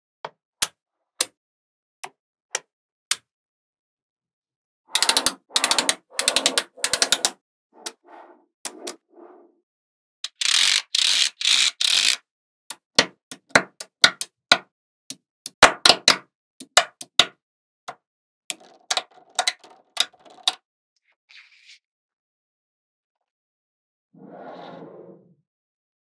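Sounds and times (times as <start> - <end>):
magnetic balls clicking together: 18.5 - 20.6.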